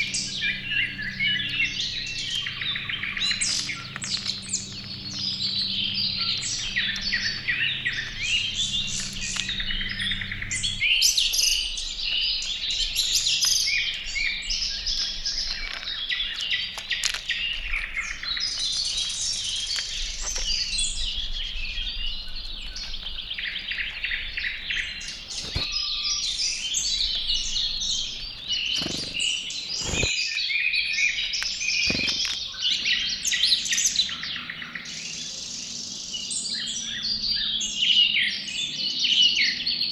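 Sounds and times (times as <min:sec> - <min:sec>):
low hum: 0:00.0 - 0:13.2
songbirds chirping: 0:00.0 - 0:39.9.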